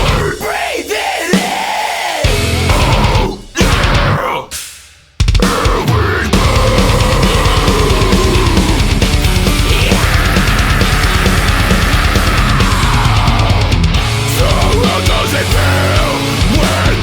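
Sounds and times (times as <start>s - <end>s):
heavy metal music: 0.0s - 17.0s.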